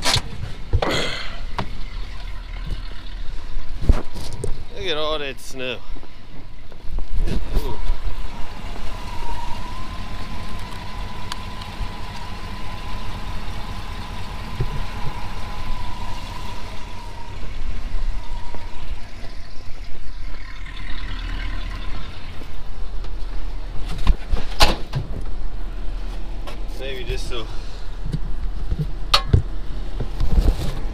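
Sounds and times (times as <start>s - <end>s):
truck engine running: 0.0s - 30.9s
thin steady whine: 1.1s - 23.8s.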